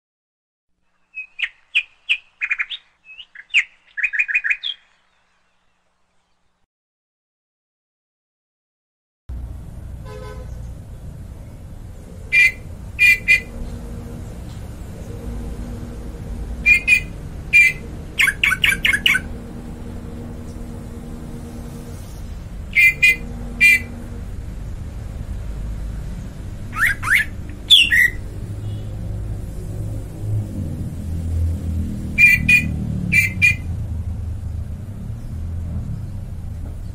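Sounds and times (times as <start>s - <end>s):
bird chirping: 0.8s - 6.6s, 10.4s - 25.3s, 26.1s - 29.0s, 32.0s - 33.8s.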